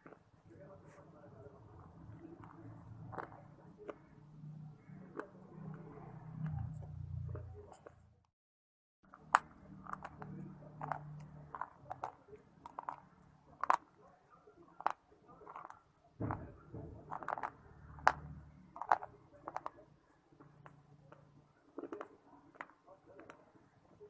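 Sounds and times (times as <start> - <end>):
chewing crunchy earth chunks: 2.1 - 4.2, 9.1 - 13.9, 17.0 - 24.0.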